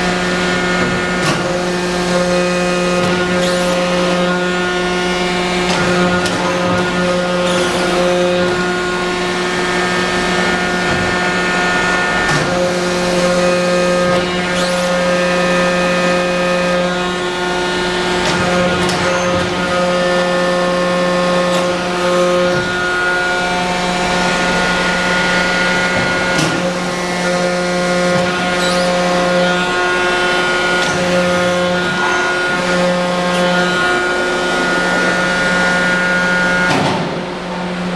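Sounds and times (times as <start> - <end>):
tube bender machine hum: 0.0 - 37.9
machine clicks and clunks: 12.2 - 14.8, 18.2 - 20.4.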